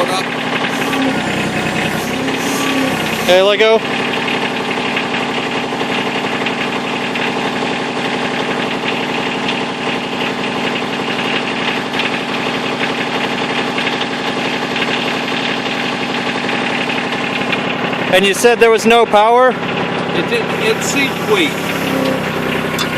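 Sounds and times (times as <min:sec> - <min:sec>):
backhoe engine idling: 0:00.0 - 0:22.9.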